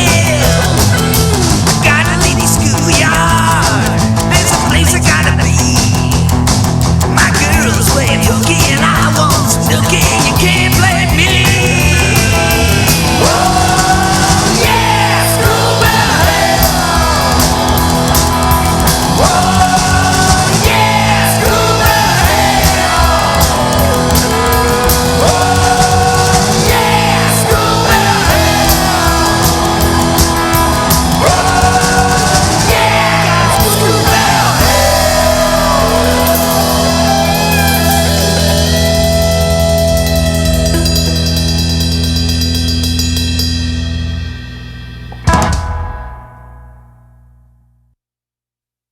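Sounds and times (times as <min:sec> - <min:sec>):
rock band playing: 0:00.0 - 0:46.8
lead guitar bending pitch: 0:00.0 - 0:47.2.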